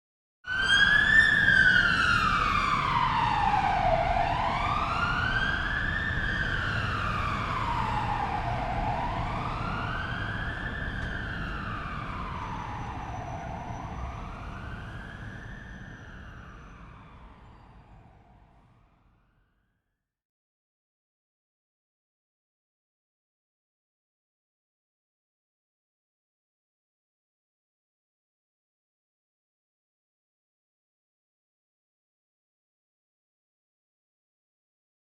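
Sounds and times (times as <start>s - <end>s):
police siren wailing: 0.5s - 18.5s.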